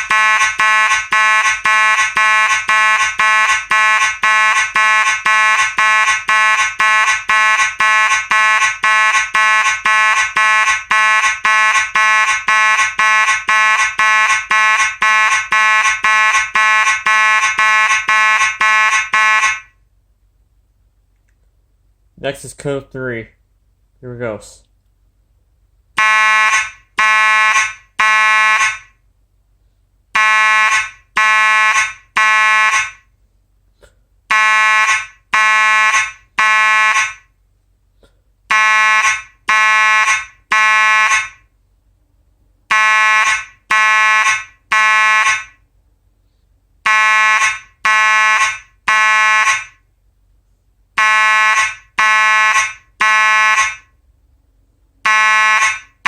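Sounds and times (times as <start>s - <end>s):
fire alarm horn blasts: 0.0s - 19.8s, 26.0s - 29.0s, 30.2s - 33.1s, 34.3s - 37.4s, 38.5s - 41.5s, 42.7s - 45.6s, 46.8s - 49.9s, 51.0s - 54.0s, 55.0s - 56.0s.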